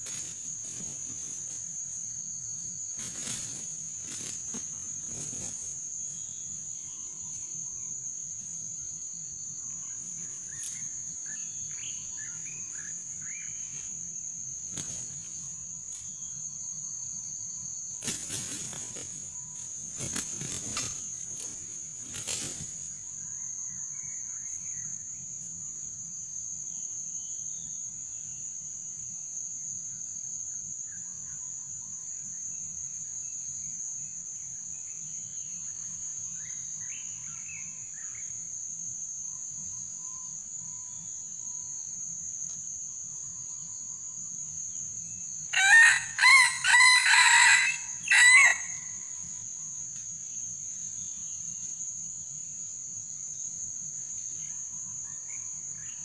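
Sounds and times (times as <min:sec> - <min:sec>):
high insect drone: 0:00.0 - 0:56.0
rooster crowing: 0:45.5 - 0:49.0.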